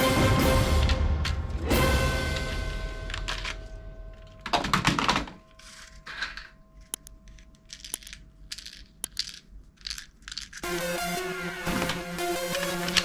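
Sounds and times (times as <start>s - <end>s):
plastic toy guns clicking: 6.1s - 10.7s.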